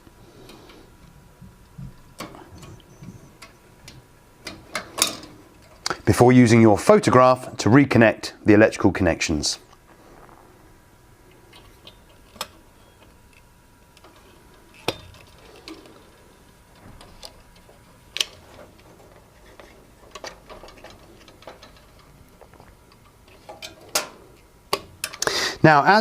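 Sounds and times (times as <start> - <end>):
wire connectors clicking onto terminals: 11.5 - 25.3.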